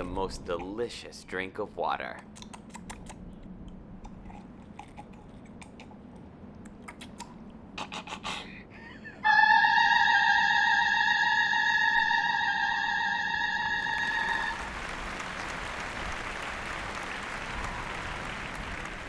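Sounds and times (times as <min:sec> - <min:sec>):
woman singing high operatic note: 0:09.2 - 0:14.3.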